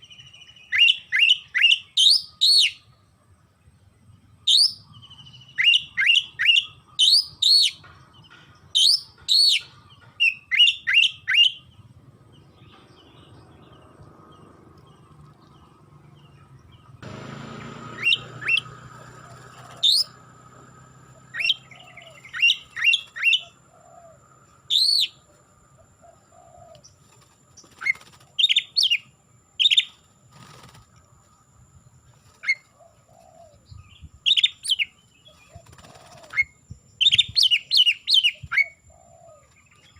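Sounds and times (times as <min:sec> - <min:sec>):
bird singing sharp whistles: 0:04.5 - 0:07.8, 0:18.0 - 0:18.7, 0:24.7 - 0:25.2.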